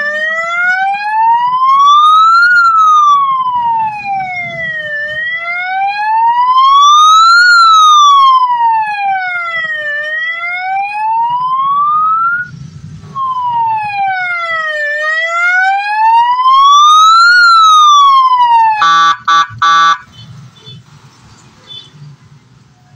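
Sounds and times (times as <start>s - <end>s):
siren wailing: 0.0s - 12.5s, 13.1s - 20.1s
steady horn blasts: 18.8s - 20.8s.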